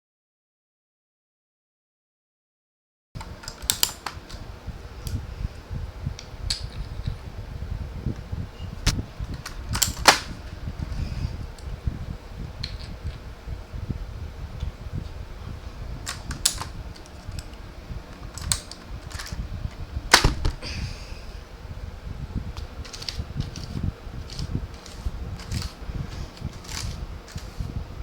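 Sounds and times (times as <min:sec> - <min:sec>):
low rumbling handling noise: 0:03.2 - 0:28.0
keyboard plastic clicks: 0:03.4 - 0:04.4, 0:18.2 - 0:19.4.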